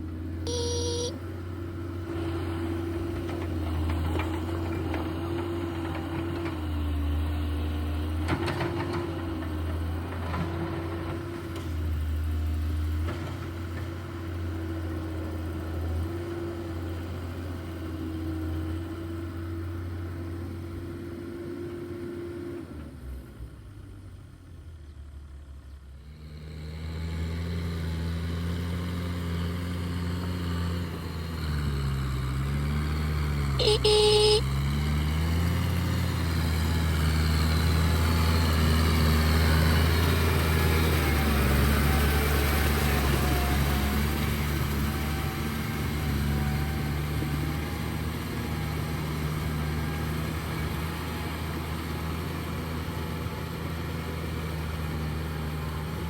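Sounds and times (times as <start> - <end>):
diesel engine of earthmoving machinery: 0.0 - 0.4, 1.2 - 56.0
lower engine note: 0.4 - 1.2, 33.6 - 34.6.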